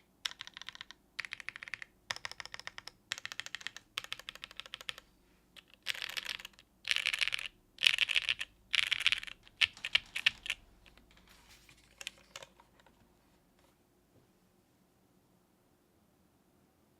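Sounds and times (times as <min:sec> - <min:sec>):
mechanical keyboard typing: 0:00.0 - 0:05.0, 0:05.6 - 0:12.9.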